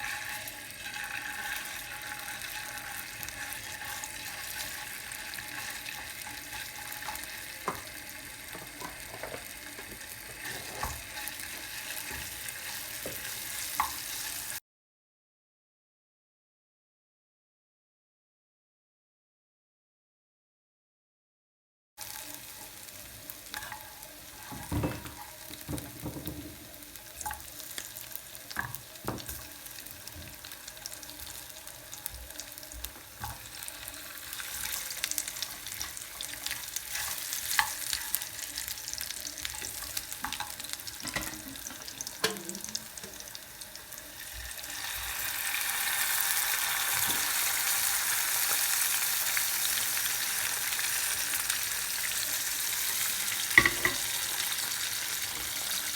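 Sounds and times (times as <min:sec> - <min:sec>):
food sizzling in a pan: 0:00.0 - 0:14.6, 0:22.0 - 0:55.9.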